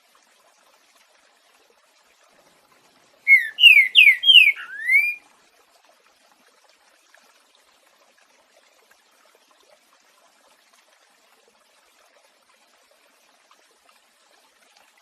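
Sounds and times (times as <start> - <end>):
bird whistling song: 3.3 - 5.2.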